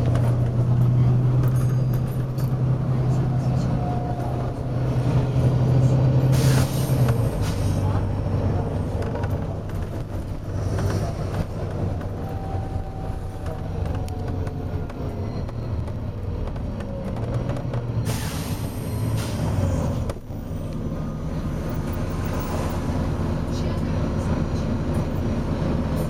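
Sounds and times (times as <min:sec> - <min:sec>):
bus engine running: 0:00.0 - 0:26.0
air brake hiss: 0:06.3 - 0:07.8, 0:18.1 - 0:19.6.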